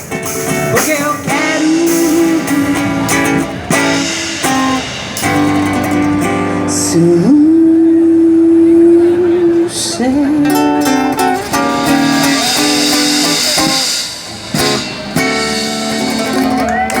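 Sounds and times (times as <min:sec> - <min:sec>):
acoustic guitar strumming: 0:00.0 - 0:17.0
woman's wordless singing: 0:06.6 - 0:11.2.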